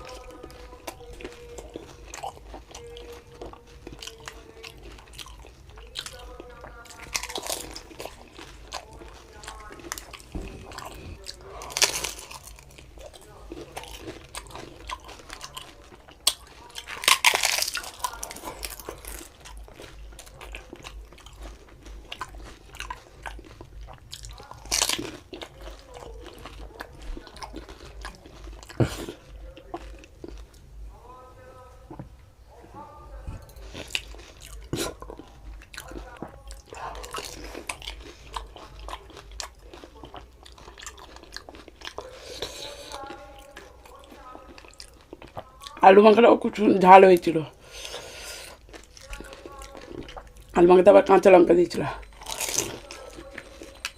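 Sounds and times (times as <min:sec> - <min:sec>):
chewing with crackles: 0:00.0 - 0:53.9
crunch of crisp shell bitten: 0:13.8 - 0:28.9.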